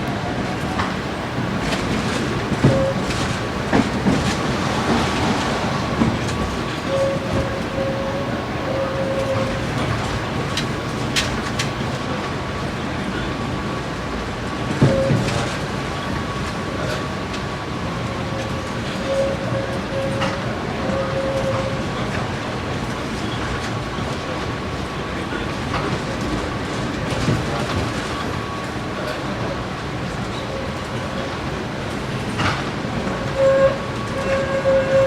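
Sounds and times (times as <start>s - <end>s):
tram rumbling on rails: 0.0s - 12.9s, 13.6s - 35.0s
faint whine: 0.8s - 12.0s
short tones: 0.9s - 12.0s.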